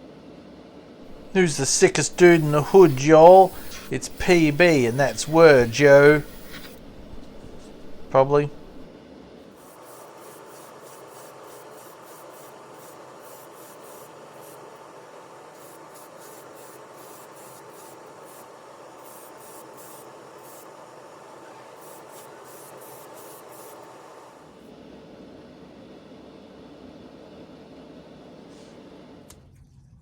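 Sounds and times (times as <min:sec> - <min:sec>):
faint hum: 0:00.0 - 0:09.5
low hiss: 0:01.0 - 0:09.0
quick rubbing strokes: 0:01.1 - 0:08.9.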